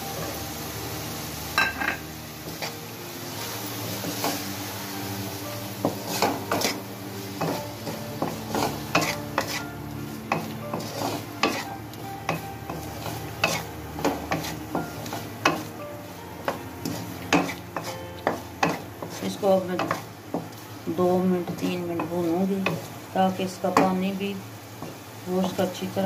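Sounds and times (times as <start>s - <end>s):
low sizzle of frying: 0.0s - 26.0s
metal spoon scraping a pan: 5.8s - 6.8s, 7.4s - 15.6s, 16.8s - 20.0s.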